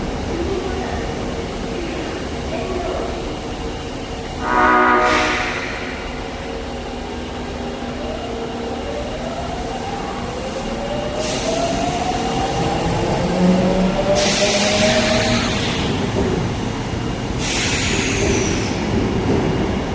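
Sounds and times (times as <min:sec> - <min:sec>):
subway train motors whining: 0:00.0 - 0:19.9
hiss: 0:11.2 - 0:12.0, 0:14.2 - 0:16.0, 0:17.4 - 0:18.8.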